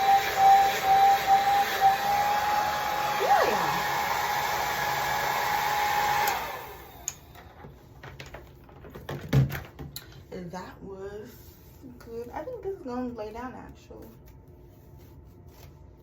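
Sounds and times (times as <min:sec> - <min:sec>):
blow dryer whining: 0:00.0 - 0:07.7.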